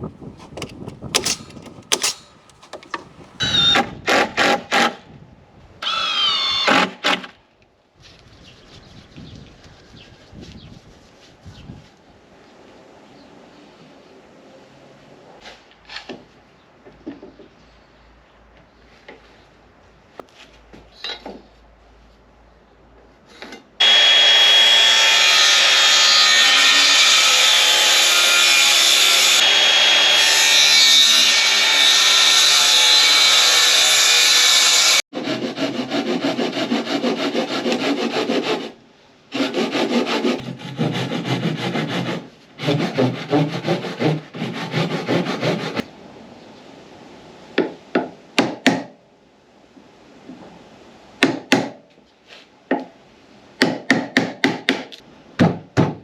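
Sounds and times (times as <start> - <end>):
saw cutting wood: 0.4 - 3.4, 23.8 - 45.8.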